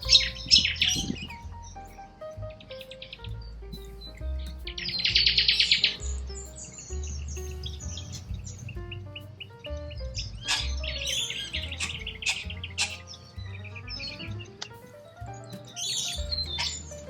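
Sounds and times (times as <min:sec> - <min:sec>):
background music with bass: 0:00.0 - 0:17.0
cockatoos screeching: 0:10.4 - 0:13.2, 0:15.8 - 0:17.0.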